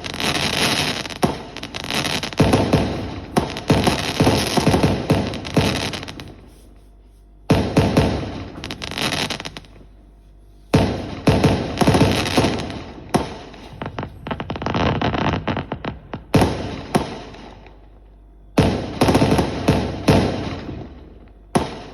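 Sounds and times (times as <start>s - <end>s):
fireworks banging and crackling: 0.0s - 6.8s, 7.5s - 10.0s, 10.7s - 21.9s.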